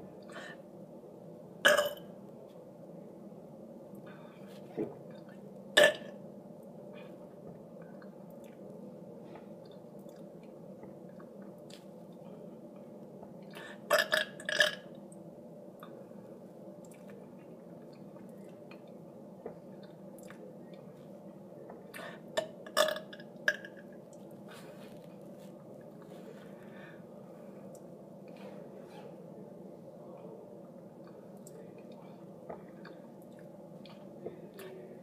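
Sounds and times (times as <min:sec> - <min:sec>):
low background hum: 0:00.0 - 0:35.0
person burping: 0:01.6 - 0:02.0.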